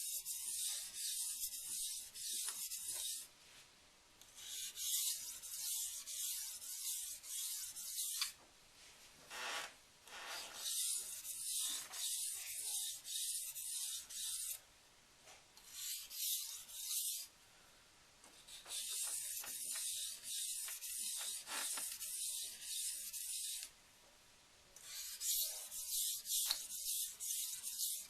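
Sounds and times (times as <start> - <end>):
knife scraping on whetstone: 4.4 - 8.4, 10.1 - 14.6, 15.6 - 17.2, 18.5 - 23.7, 24.8 - 28.0.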